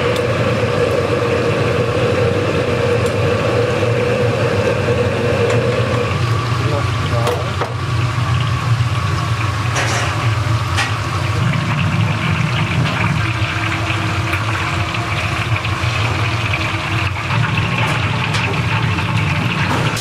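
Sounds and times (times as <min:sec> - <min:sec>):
watery rushing: 0:10.3 - 0:20.0.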